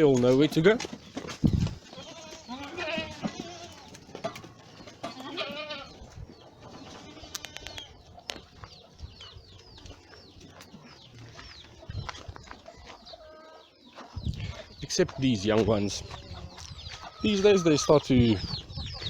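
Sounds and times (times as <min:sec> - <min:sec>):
goats moving soft knocks: 0:00.0 - 0:13.1
small birds chirping: 0:00.0 - 0:19.0
goats bleating: 0:01.8 - 0:04.0, 0:05.0 - 0:06.1, 0:06.8 - 0:07.9.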